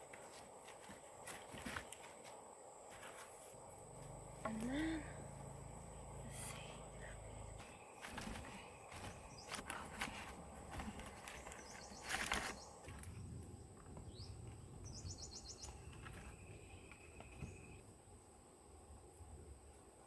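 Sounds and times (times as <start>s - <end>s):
dry sticks rustling and knocking: 0.0s - 3.5s, 7.6s - 14.6s, 15.6s - 17.7s.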